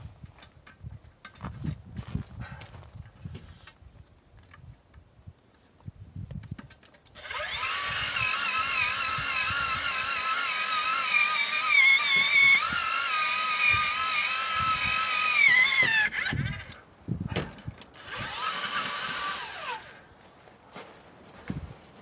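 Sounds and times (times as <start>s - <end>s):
power drill whining: 7.1s - 16.8s, 17.6s - 20.0s.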